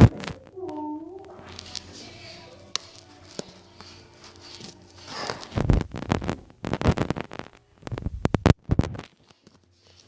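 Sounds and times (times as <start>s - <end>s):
microphone handling thumps and rubs: 5.4s - 9.2s.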